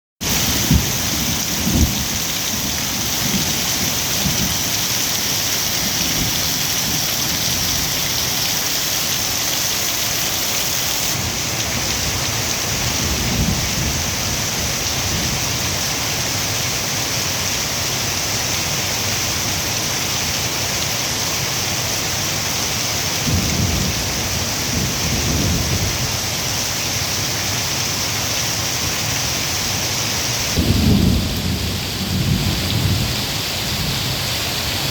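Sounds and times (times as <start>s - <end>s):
heavy rain pouring: 0.2s - 34.9s
thunder rumbling: 0.3s - 8.5s, 11.1s - 15.3s, 23.2s - 26.2s, 30.5s - 34.0s.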